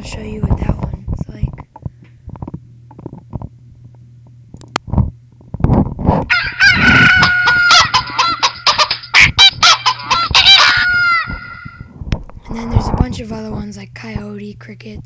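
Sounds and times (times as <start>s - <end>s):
low hum: 0.0s - 15.0s
recorded chicken calls: 6.3s - 11.9s.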